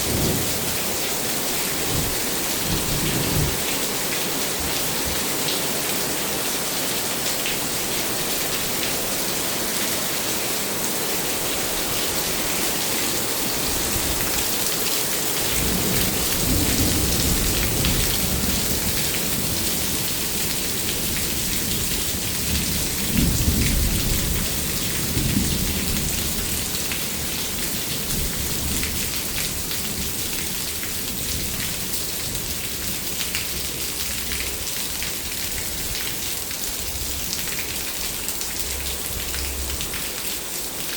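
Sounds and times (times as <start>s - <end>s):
heavy rain falling: 0.0s - 40.9s
thunder rumbling: 1.8s - 3.7s.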